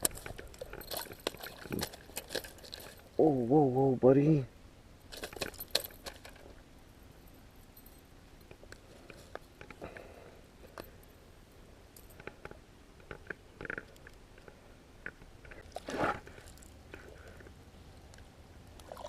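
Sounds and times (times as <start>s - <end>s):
light handling rustling: 0.0s - 3.2s, 5.1s - 6.6s.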